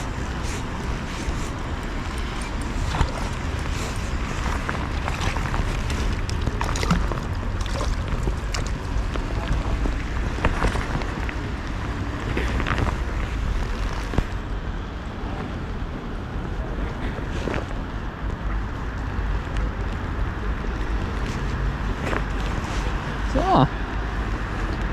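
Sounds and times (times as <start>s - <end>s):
rain taps: 0.0s - 14.4s.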